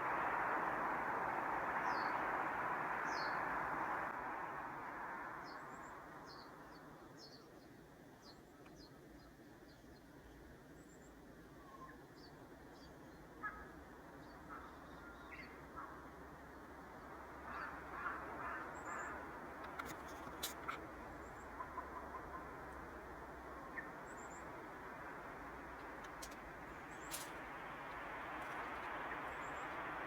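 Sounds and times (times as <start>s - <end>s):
steady low hiss: 0.0s - 30.0s.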